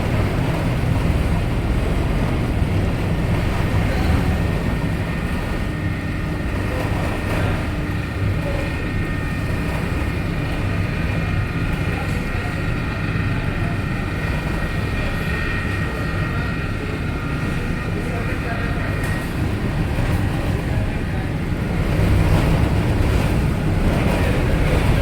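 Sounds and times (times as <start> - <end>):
ship engines droning: 0.0 - 25.0.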